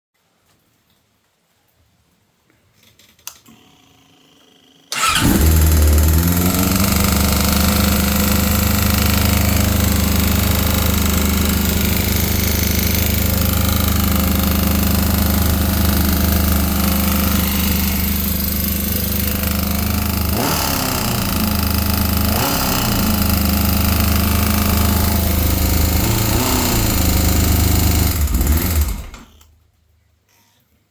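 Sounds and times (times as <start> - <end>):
motorcycle engine knocking: 5.0 - 28.8.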